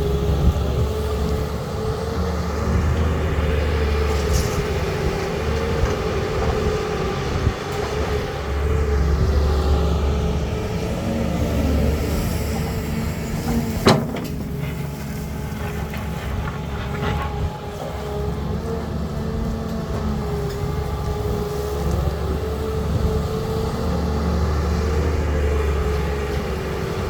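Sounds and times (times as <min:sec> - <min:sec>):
diesel engine running: 0:00.0 - 0:27.0
hydraulic whine: 0:00.0 - 0:27.0
sharp bang: 0:13.7 - 0:17.2.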